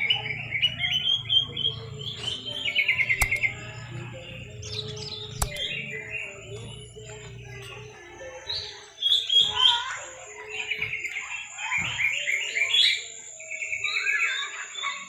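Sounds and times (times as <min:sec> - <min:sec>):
bulbul chirping: 0:00.9 - 0:06.7
sharp clicks: 0:03.0 - 0:04.1, 0:04.7 - 0:06.0.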